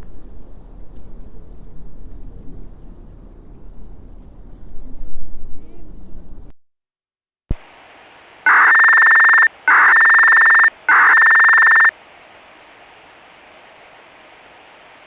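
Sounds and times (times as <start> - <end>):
electronic beeps: 8.5 - 11.9.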